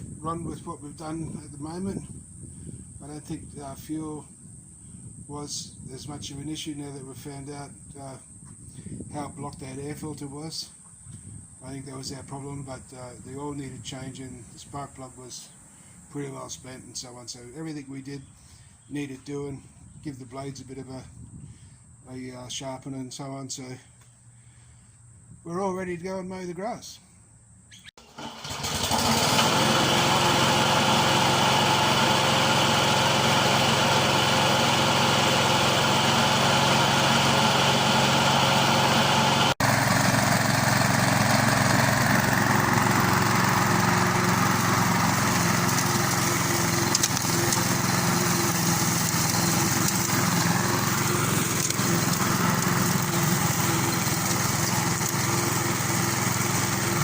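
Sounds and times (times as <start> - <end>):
lawnmower engine running: 28.0 - 57.0.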